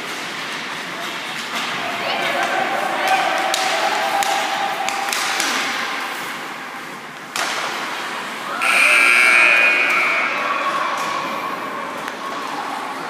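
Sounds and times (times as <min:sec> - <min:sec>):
shrill steady tone: 0:08.6 - 0:10.7.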